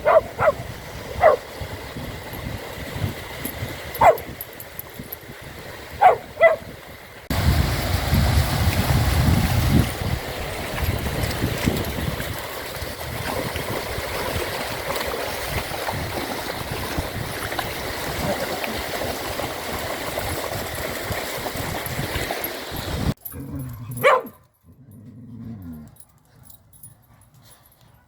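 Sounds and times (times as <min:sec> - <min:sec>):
dog yelp: 0:00.0 - 0:00.6, 0:01.2 - 0:01.4, 0:04.0 - 0:04.2, 0:06.0 - 0:06.6, 0:23.9 - 0:24.4
wind on microphone: 0:00.0 - 0:23.2
surf washing on beach: 0:05.6 - 0:23.2.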